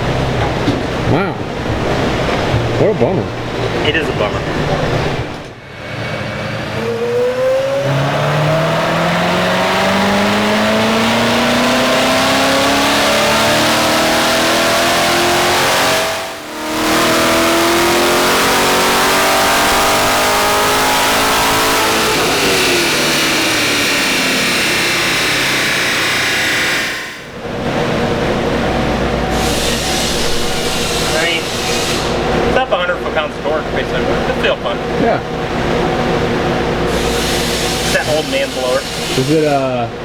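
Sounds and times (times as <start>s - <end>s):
car engine revving at full throttle: 0.0s - 40.0s.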